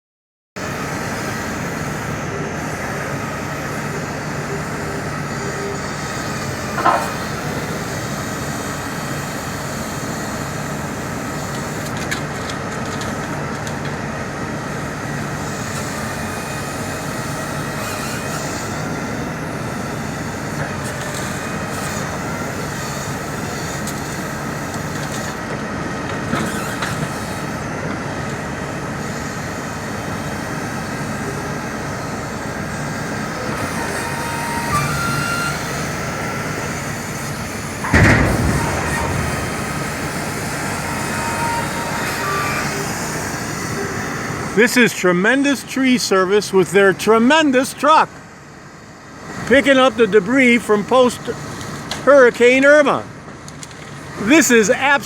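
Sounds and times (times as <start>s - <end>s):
clunks: 5.3s - 8.1s, 23.0s - 28.4s, 33.1s - 44.5s
truck engine running: 18.4s - 52.5s
loud knock: 37.9s - 42.5s.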